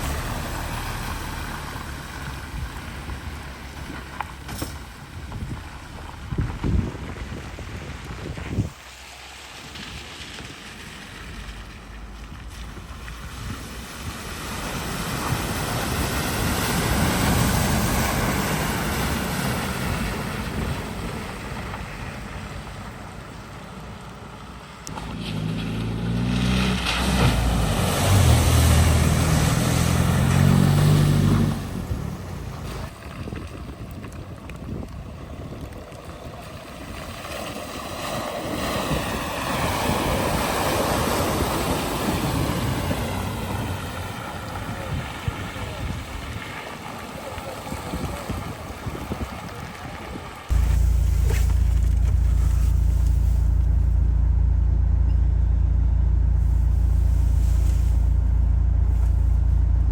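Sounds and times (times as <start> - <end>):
vehicle engine revving: 0.0 - 33.0, 50.4 - 59.9
tyres splashing through water: 0.0 - 54.0.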